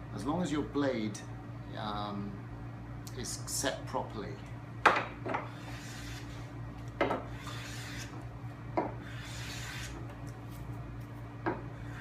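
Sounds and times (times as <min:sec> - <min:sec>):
plane scraping board edge: 0:05.4 - 0:08.2, 0:08.8 - 0:10.2.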